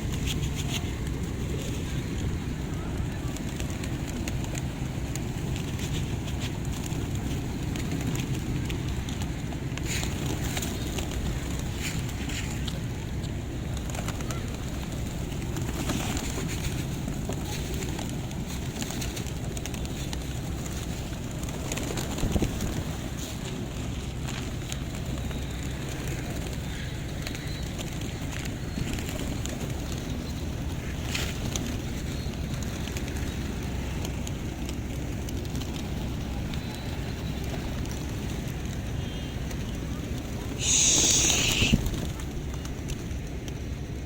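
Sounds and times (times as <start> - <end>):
low street rumble: 0.0 - 44.0
pigeons cooing: 40.6 - 42.0
wind on microphone: 40.6 - 42.0.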